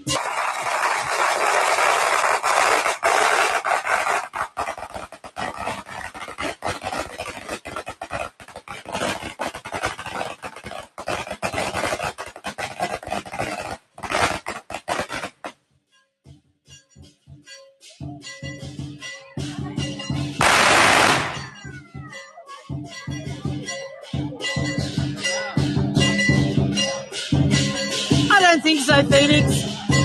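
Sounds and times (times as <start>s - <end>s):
firecrackers crackling: 0.0s - 15.6s, 20.4s - 21.7s.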